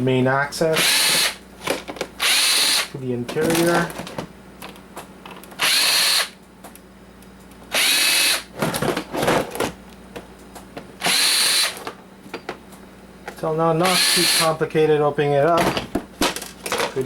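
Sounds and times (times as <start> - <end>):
drill-driver spinning: 2.2 - 2.9, 5.6 - 6.3, 7.7 - 8.5, 11.0 - 11.8, 13.8 - 14.5.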